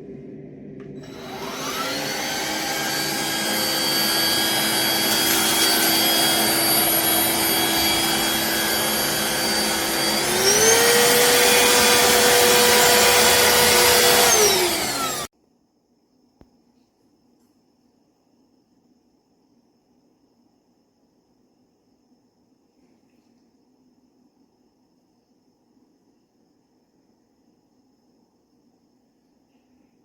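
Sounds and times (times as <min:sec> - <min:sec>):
stick vacuum motor whining: 0:01.0 - 0:15.3.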